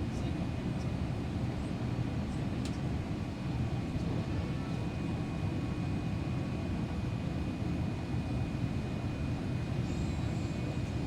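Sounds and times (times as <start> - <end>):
aircraft cabin engine rumble: 0.0 - 11.0
faint high whine: 9.8 - 11.0.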